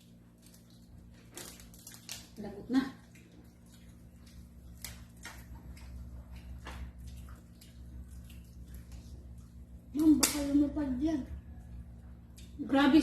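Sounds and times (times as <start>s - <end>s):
crab shell cracking: 1.3s - 2.4s.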